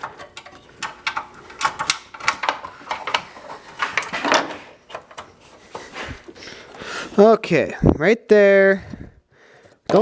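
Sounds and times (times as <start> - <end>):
cable clicks and rattles: 0.0 - 5.9.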